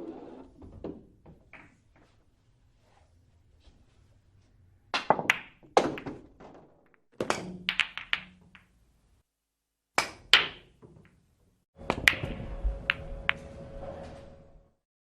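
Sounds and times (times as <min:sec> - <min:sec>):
billiard balls clacking: 0:05.0 - 0:08.8, 0:11.8 - 0:13.5.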